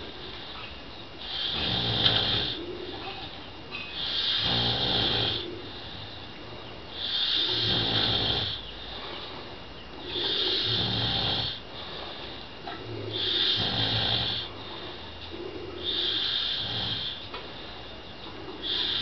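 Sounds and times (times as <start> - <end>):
quiet breathing: 0.0 - 19.0
person snoring: 1.2 - 2.9, 4.0 - 6.0, 7.0 - 8.6, 10.0 - 15.1, 15.7 - 17.2, 18.6 - 19.0.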